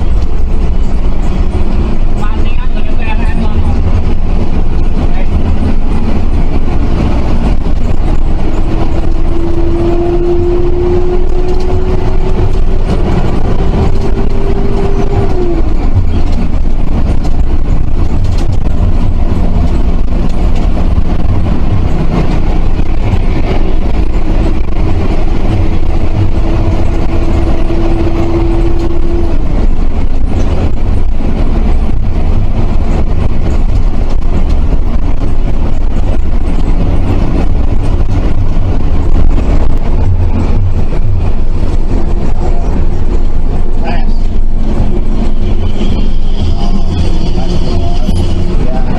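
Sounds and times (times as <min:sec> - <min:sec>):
bus engine and road rumble: 0:00.0 - 0:48.9
whine rising in pitch: 0:07.9 - 0:16.5.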